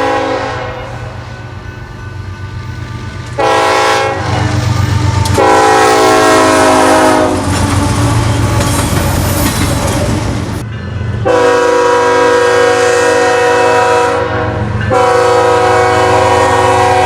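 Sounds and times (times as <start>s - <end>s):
locomotive air horn: 0.0s - 1.3s, 3.4s - 8.5s, 11.2s - 17.0s
passing train rumble and clatter: 0.0s - 17.0s.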